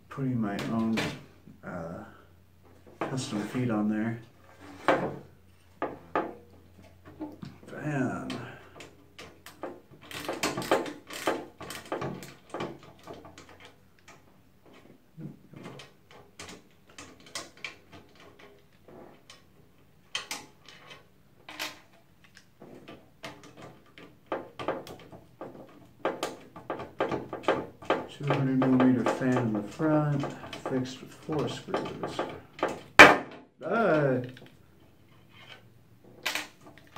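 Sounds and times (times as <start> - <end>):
computer case parts rattling: 9.1 - 34.5.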